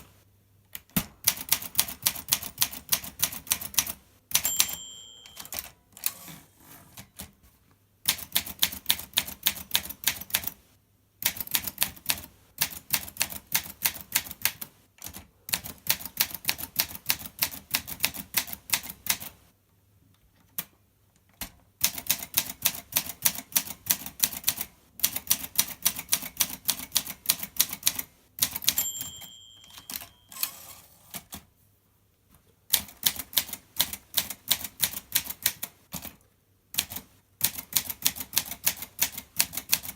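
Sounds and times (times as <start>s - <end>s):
manual typewriter typing: 0.7s - 6.3s, 8.1s - 10.6s, 11.2s - 19.4s, 21.4s - 31.5s, 32.7s - 36.2s, 36.8s - 39.9s
typewriter margin bell ring: 4.4s - 6.3s, 28.6s - 31.0s.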